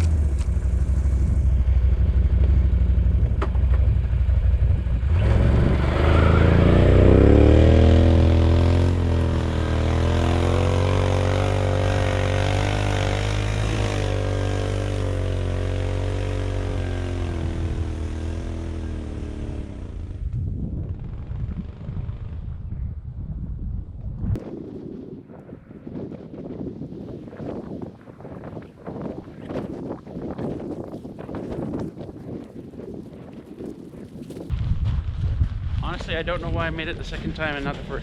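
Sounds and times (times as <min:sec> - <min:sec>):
atv engine revving: 0:00.0 - 0:22.4.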